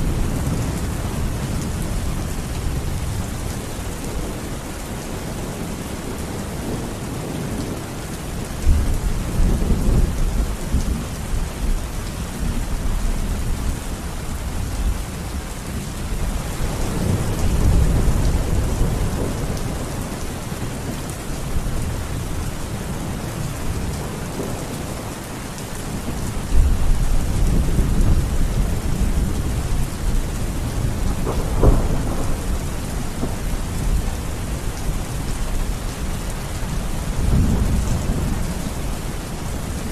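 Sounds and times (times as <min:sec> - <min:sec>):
heavy rain: 0:00.0 - 0:39.9
thunder rumbling: 0:16.2 - 0:25.0, 0:26.0 - 0:39.9
sharp thunderclap: 0:30.7 - 0:34.0.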